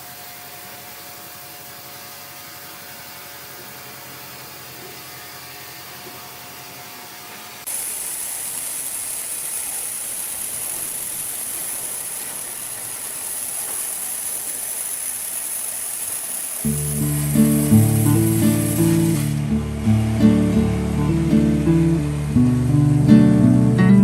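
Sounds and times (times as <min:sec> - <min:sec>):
loud steady hissing: 0:00.0 - 0:04.6, 0:07.6 - 0:24.0
sawmill machinery low hum: 0:07.7 - 0:24.0.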